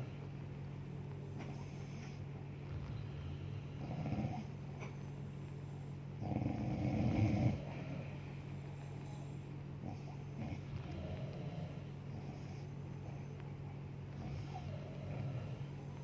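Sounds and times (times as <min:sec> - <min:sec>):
steady low hum: 0:00.0 - 0:16.0
woman snoring: 0:06.2 - 0:08.2, 0:14.2 - 0:15.8.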